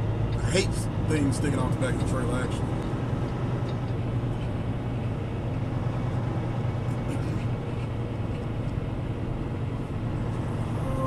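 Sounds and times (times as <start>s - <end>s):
truck diesel engine low drone: 0.0s - 11.0s.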